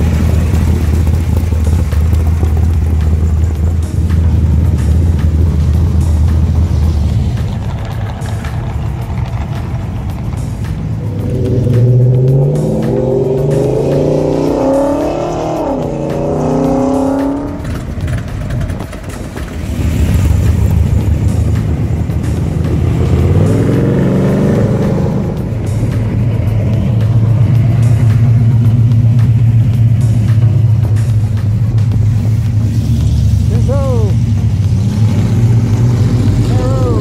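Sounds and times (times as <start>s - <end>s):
car engine revving: 0.0s - 37.0s.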